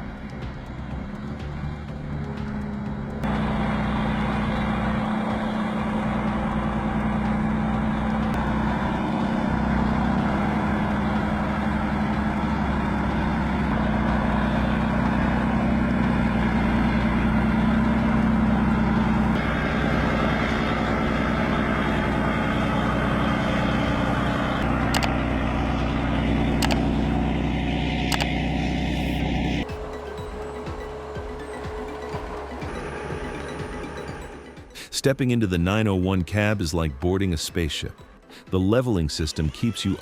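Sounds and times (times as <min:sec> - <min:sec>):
heavy vehicle engine running: 0:00.0 - 0:35.0
sharp clicks or knocks: 0:24.9 - 0:25.2, 0:26.6 - 0:26.8.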